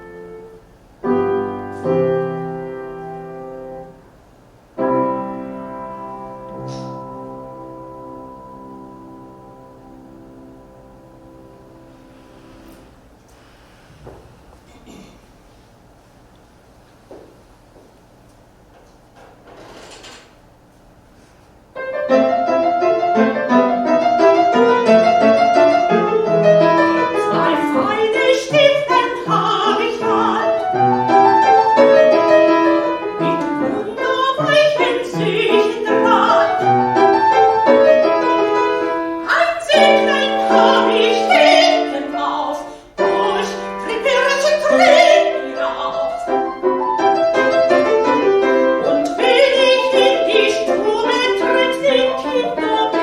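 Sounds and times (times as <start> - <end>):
piano playing quick notes: 4.8 - 13.0
soprano singing: 21.8 - 53.0.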